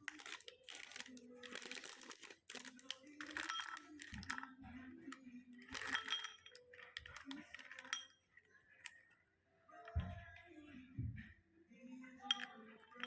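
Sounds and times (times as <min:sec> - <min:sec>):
packaging rustling: 0:00.0 - 0:04.4
chocolate box clinking: 0:00.0 - 0:09.1, 0:12.2 - 0:13.0.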